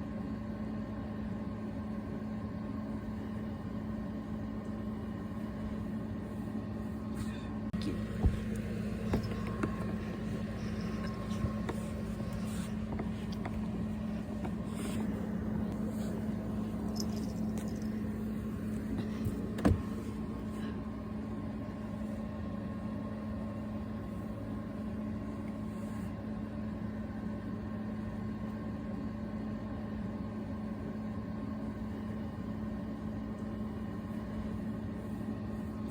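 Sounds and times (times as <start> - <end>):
machine hum: 2.8 - 22.2.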